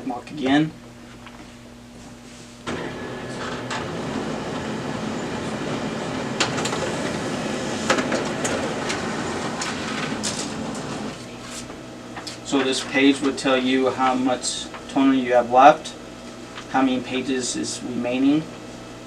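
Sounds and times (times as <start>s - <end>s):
laser printer printing: 2.7s - 11.4s
printer clicks: 6.1s - 11.1s.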